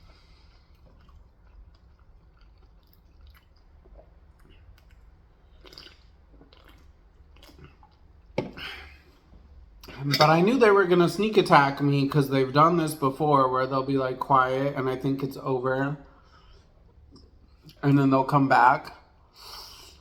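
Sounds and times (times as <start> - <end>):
person chewing: 0.0 - 10.0.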